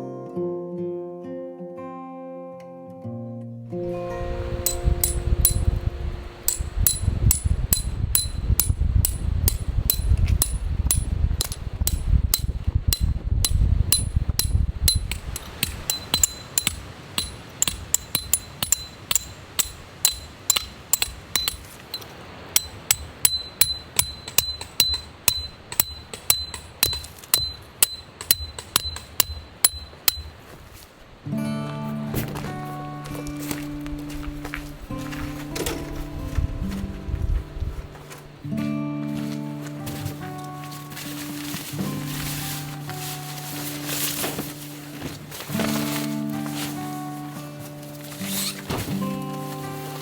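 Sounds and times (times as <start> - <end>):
hammer striking metal: 4.6 - 5.8, 6.4 - 30.4.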